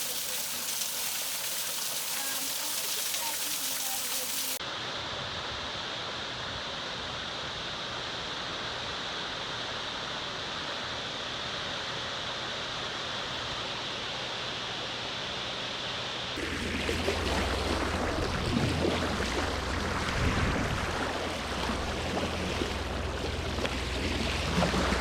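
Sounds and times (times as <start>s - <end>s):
flowing water rushing: 0.0s - 4.6s, 16.4s - 25.0s.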